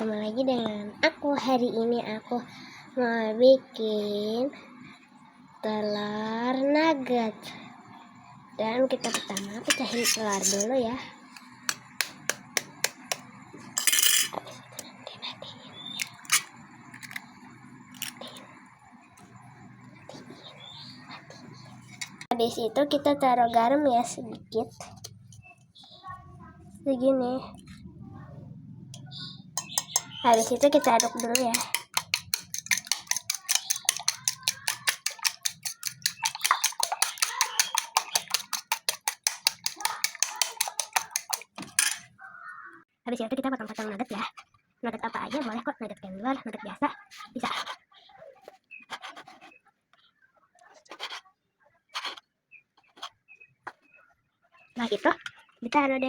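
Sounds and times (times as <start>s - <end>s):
eggshell cracking: 11.4s - 13.3s, 29.6s - 41.7s
egg tapped against bowl rim: 29.6s - 41.6s.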